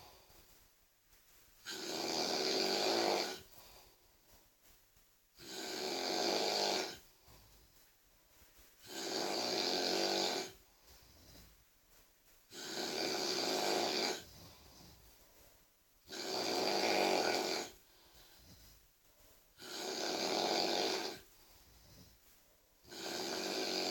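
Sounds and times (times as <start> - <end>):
quiet breathing: 0.0 - 23.9
person snoring loudly: 1.6 - 3.5, 5.4 - 7.0, 8.8 - 10.6, 12.5 - 14.3, 16.1 - 17.8, 19.6 - 21.3, 22.8 - 23.9.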